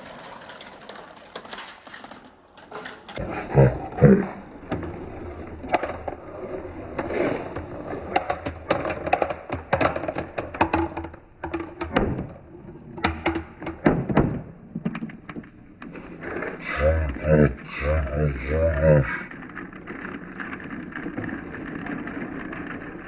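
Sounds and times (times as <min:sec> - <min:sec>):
marbles rolling on track: 0:00.0 - 0:03.2, 0:04.4 - 0:12.1, 0:12.9 - 0:13.9, 0:14.7 - 0:23.0
marbles clicking: 0:16.8 - 0:23.0.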